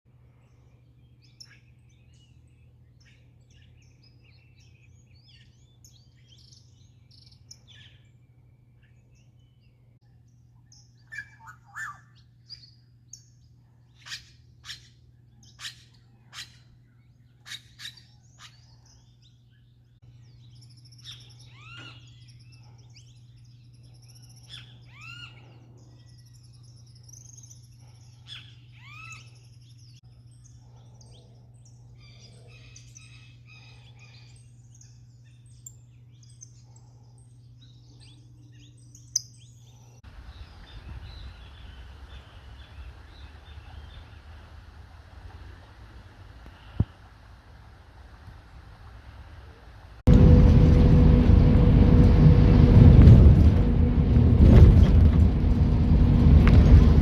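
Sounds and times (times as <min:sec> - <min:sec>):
birds calling and chirping: 0:00.1 - 0:44.6
steady low hum: 0:00.1 - 0:57.0.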